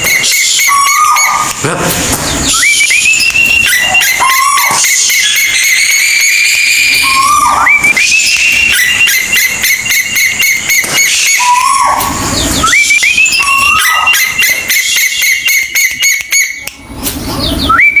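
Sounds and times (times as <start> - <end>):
bird whistling two notes: 2.5 - 16.6.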